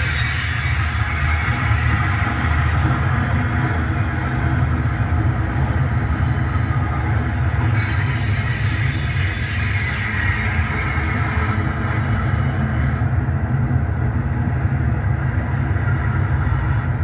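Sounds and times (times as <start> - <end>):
diesel locomotive running: 0.0 - 17.0.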